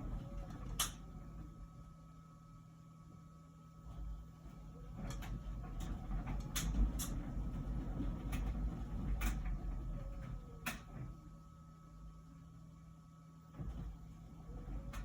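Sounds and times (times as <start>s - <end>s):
machine background hum: 0.0s - 15.0s
washing machine drum rumbling: 3.9s - 11.3s.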